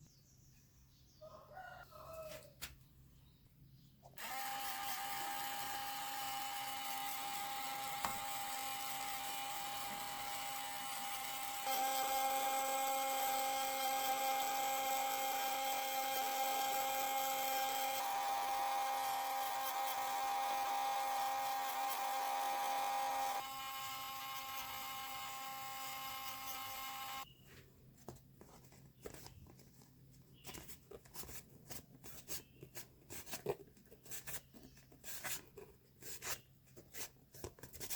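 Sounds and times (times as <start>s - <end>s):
small electric motor whining: 4.2s - 27.3s.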